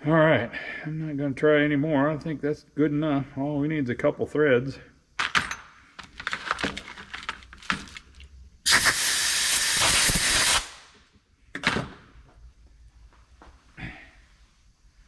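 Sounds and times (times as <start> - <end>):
pressurised air hissing: 8.6 - 10.9.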